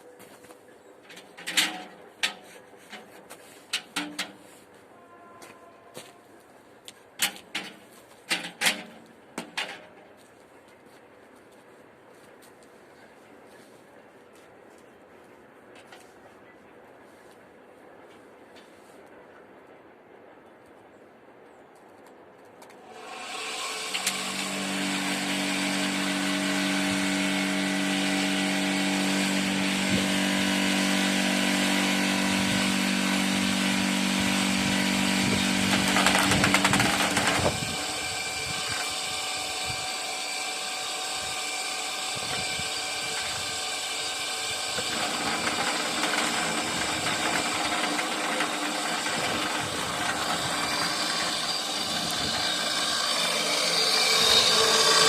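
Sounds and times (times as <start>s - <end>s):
vibrating table motor hum: 40.8s - 55.0s.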